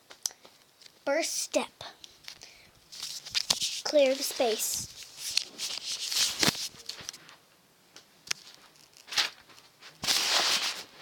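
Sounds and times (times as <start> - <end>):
things rustling and scuffing: 2.2 - 7.4.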